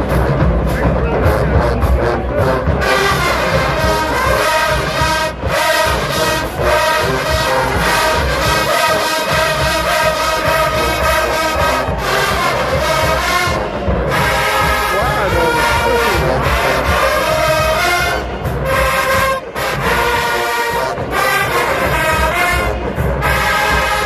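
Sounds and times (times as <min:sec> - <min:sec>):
marching band brass chords: 0:00.0 - 0:24.0.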